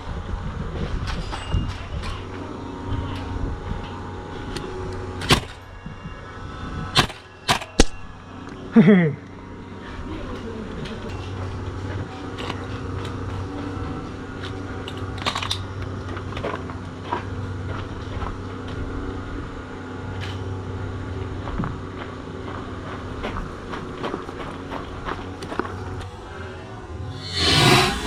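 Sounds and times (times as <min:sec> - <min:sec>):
steady low hum: 0:24.0 - 0:28.0.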